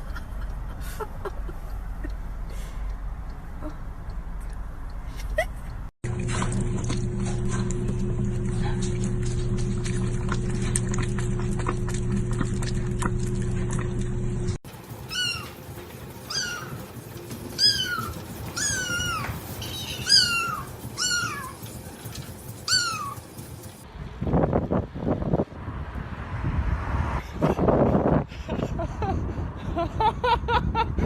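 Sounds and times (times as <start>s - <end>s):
steady mechanical hum: 0.0s - 25.4s
cat meowing: 15.1s - 15.6s, 16.3s - 16.7s, 17.6s - 21.6s.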